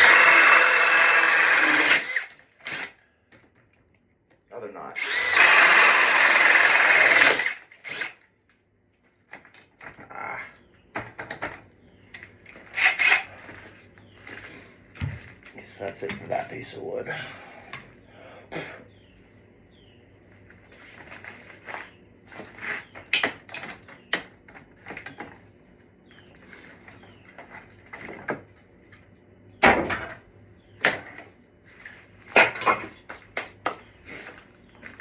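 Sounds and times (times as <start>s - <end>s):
objects knocking and clattering: 32.3s - 33.8s.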